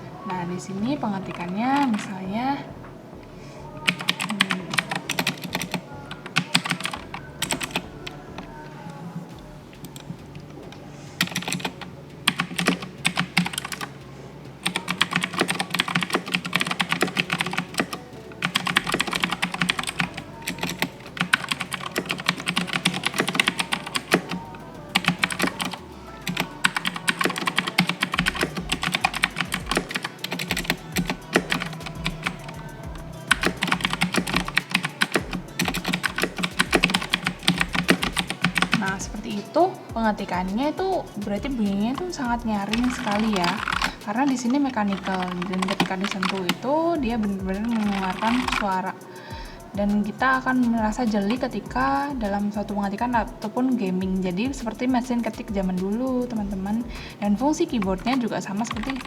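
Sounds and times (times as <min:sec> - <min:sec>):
background music: 0:00.0 - 0:59.0
clicky mechanical keyboard typing: 0:03.9 - 0:07.8, 0:11.2 - 0:13.9, 0:14.6 - 0:39.5, 0:41.4 - 0:48.8, 0:54.5 - 0:59.0.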